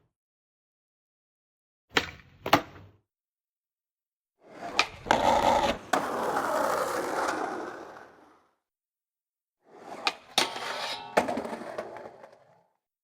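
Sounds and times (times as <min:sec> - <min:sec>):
skateboard grinding scrape: 0:04.4 - 0:08.5, 0:09.7 - 0:12.7
skateboard wheels rolling: 0:04.4 - 0:08.6, 0:09.7 - 0:12.8.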